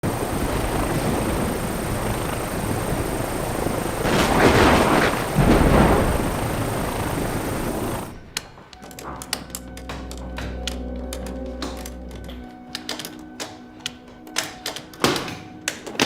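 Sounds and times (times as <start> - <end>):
dense rumbling roar: 0.4 - 8.2.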